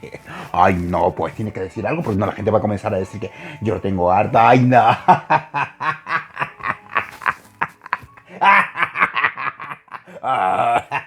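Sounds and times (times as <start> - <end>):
person laughing: 4.8 - 11.0.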